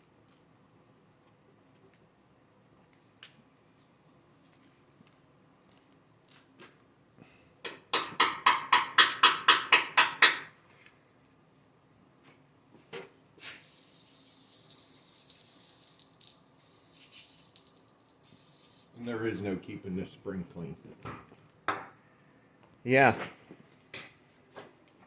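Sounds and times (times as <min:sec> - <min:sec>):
aerosol spray hissing: 0:13.6 - 0:19.4
spray can rattling: 0:13.6 - 0:19.9.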